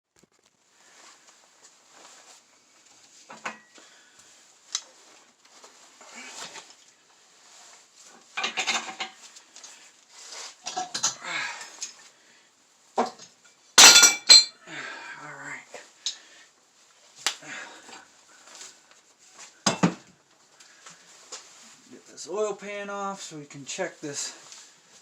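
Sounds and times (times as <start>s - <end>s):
hand tools clinking on metal: 13.8s - 14.6s.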